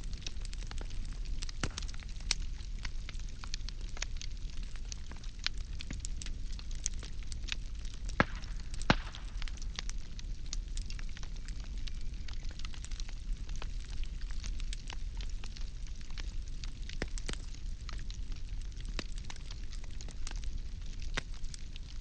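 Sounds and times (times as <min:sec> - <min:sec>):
fire rumbling and hissing: 0:00.0 - 0:22.0
firewood crackling and popping: 0:00.0 - 0:22.0.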